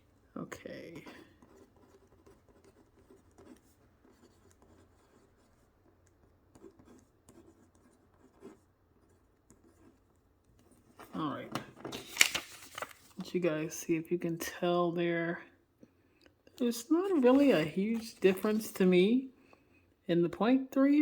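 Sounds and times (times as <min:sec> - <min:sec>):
pencil scratching on paper: 0:01.0 - 0:10.2.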